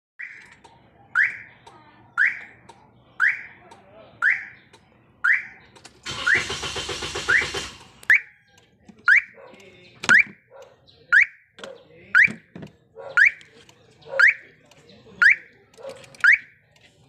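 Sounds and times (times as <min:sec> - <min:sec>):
engine cranking by starter: 0:05.8 - 0:08.1.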